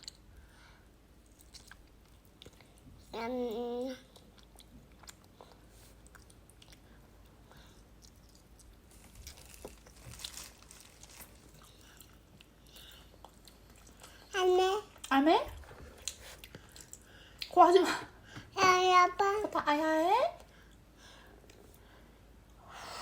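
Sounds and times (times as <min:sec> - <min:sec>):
toddler chewing: 0:01.3 - 0:17.6.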